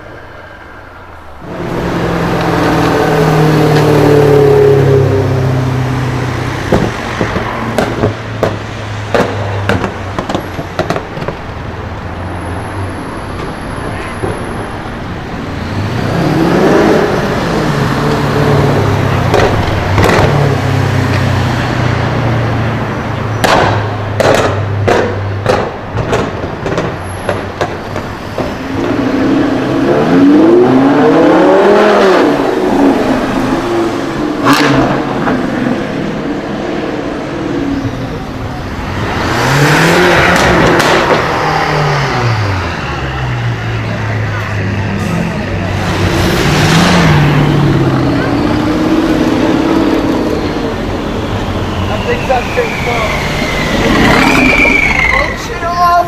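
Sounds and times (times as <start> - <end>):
car engine revving: 1.4 - 13.4, 14.4 - 55.4
exhaust pops and crackles: 6.7 - 11.6, 19.2 - 21.3, 23.4 - 29.1, 40.2 - 41.5.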